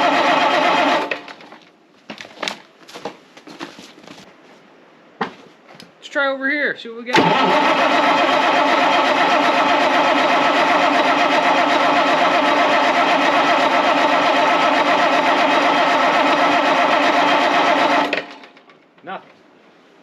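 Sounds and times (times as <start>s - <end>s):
diesel engine cranking: 0.0s - 1.6s, 7.1s - 19.1s.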